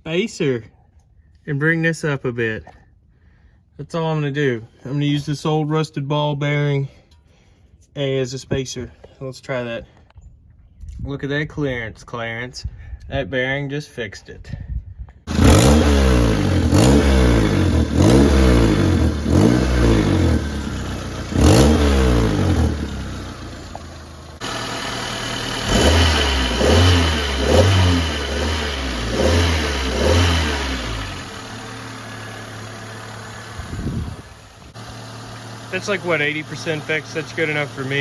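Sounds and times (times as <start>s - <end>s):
car engine revving: 15.3s - 38.0s.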